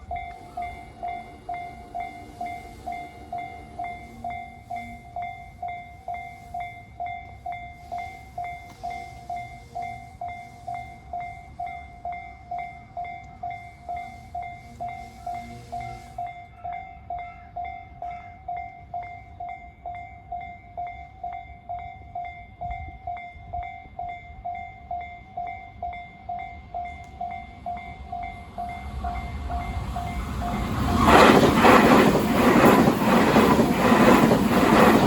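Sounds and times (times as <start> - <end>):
train passing: 0.0 - 35.0
train wheels clattering over rail joints: 30.1 - 35.0.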